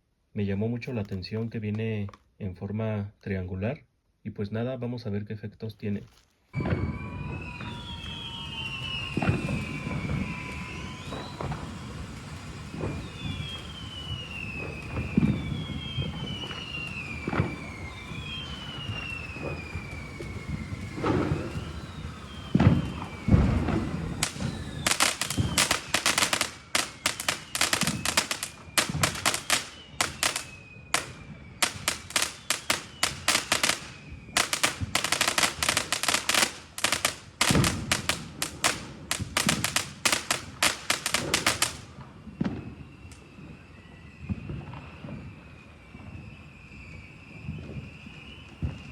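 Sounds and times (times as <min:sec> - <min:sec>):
rapid firework cracks: 0:06.6 - 0:43.2
fireworks launch thumps: 0:06.6 - 0:43.3.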